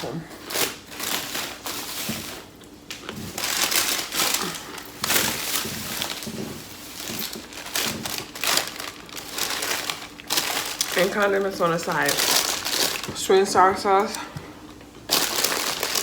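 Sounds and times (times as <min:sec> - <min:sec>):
takeout packaging crinkling: 0:00.2 - 0:16.0.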